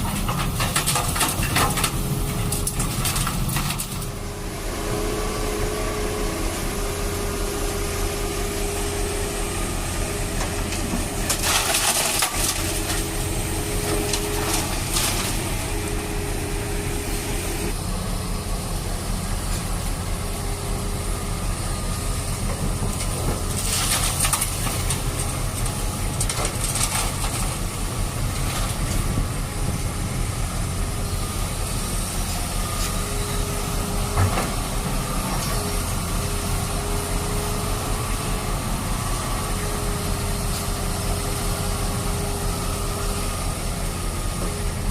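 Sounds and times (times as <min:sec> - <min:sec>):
crunching and scraping: 0:00.0 - 0:04.2, 0:10.4 - 0:16.0, 0:22.8 - 0:29.2
truck engine humming: 0:00.0 - 0:44.9.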